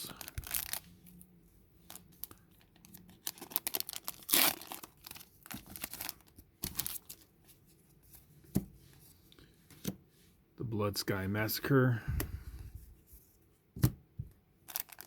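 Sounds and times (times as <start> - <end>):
foil wrapper crinkling and tearing: 0.0 - 0.9, 1.9 - 7.2, 14.6 - 15.0.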